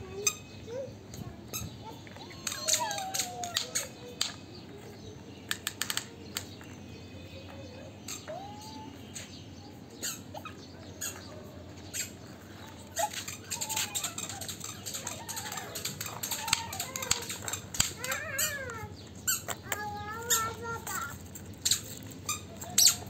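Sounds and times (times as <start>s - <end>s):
plastic toys clicking and clattering: 2.0s - 6.8s, 12.7s - 23.0s.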